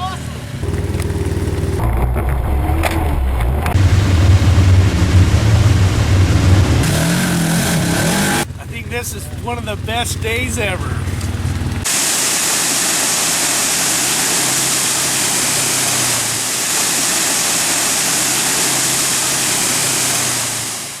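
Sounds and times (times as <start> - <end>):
vehicle engine running: 0.0 - 21.0
waterfall rushing: 3.6 - 8.4, 11.8 - 21.0.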